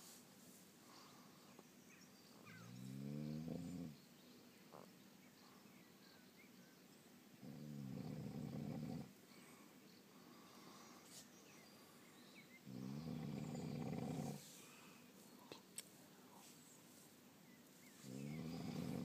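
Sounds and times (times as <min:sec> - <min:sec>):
quiet breathing: 0:00.0 - 0:02.6, 0:04.7 - 0:06.5, 0:09.1 - 0:19.0
man snoring: 0:07.4 - 0:09.1, 0:12.7 - 0:14.4, 0:18.1 - 0:19.0.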